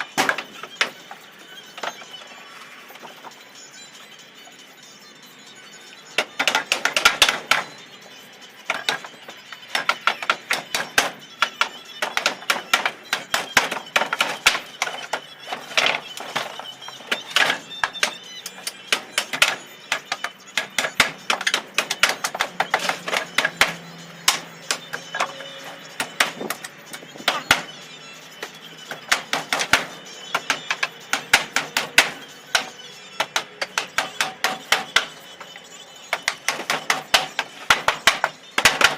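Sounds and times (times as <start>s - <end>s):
hammer driving nails into wood: 17.2s - 25.3s, 29.1s - 35.1s.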